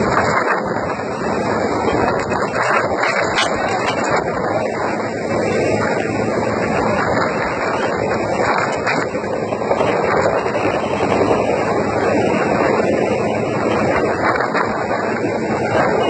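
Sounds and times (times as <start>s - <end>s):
helicopter rotor and engine: 0.0s - 16.0s
wind on microphone: 0.0s - 16.0s.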